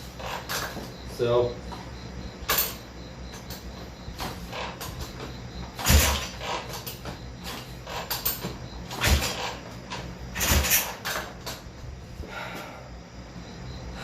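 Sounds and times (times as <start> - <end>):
motorcycle kick-start strokes: 4.2 - 11.6
engine turning over: 5.8 - 7.0, 7.8 - 11.3.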